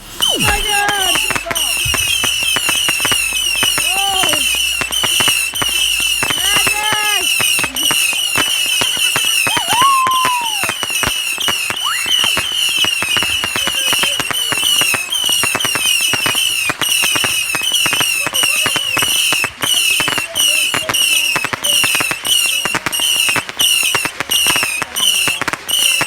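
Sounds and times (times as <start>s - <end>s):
high chirping sound: 0.0s - 9.4s
firework whistle gliding: 0.0s - 26.0s
fireworks popping and crackling: 0.0s - 26.0s.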